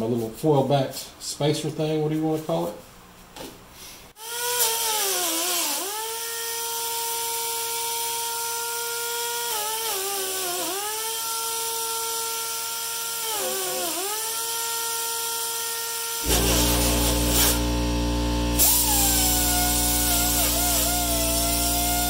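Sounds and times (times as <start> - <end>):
power tool sanding filler: 4.2 - 22.0.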